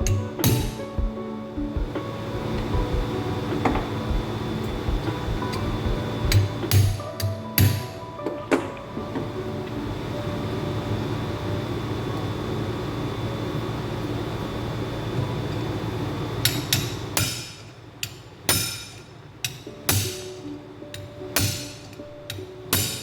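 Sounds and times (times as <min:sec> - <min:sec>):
hammer striking chisel on metal: 0:00.0 - 0:00.9, 0:16.5 - 0:20.3, 0:21.4 - 0:21.9, 0:22.7 - 0:23.0
steady background noise: 0:00.0 - 0:23.0.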